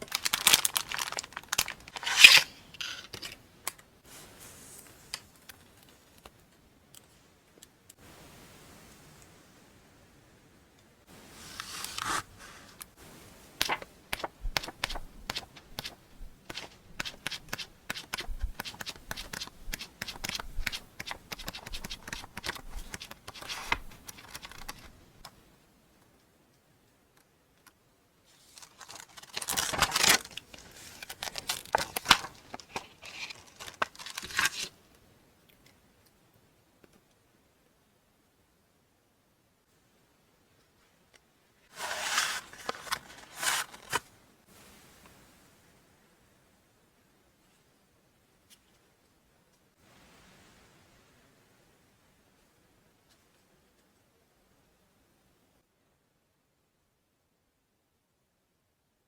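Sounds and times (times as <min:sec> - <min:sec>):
packaging tearing: 0:00.0 - 0:03.3, 0:28.6 - 0:34.7, 0:41.7 - 0:44.1
packaging crinkling and rustling: 0:00.0 - 0:03.4, 0:13.6 - 0:25.0, 0:28.4 - 0:34.8, 0:41.7 - 0:44.1.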